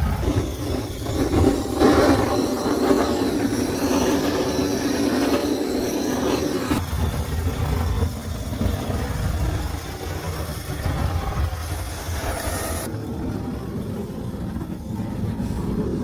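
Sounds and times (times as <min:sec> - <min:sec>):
strong wind blowing: 0:00.0 - 0:16.0.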